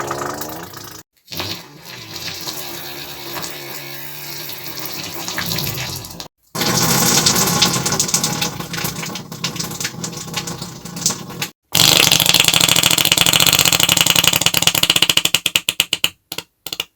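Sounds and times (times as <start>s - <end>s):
fluttering fart: 0.0s - 4.3s, 5.1s - 6.2s
rough sputtering fart: 0.0s - 6.0s.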